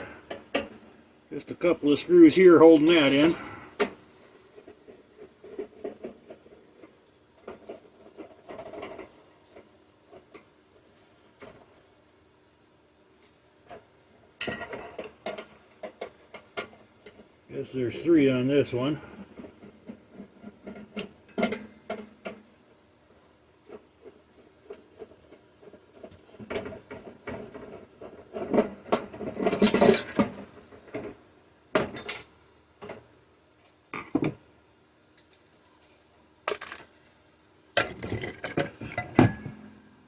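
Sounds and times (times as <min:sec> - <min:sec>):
metal parts clicking and rattling: 0:37.8 - 0:39.5.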